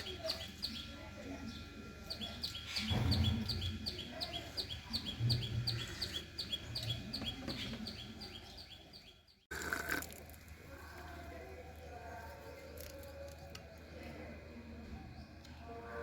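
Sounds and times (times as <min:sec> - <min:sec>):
small bird chirping: 0:00.0 - 0:09.9.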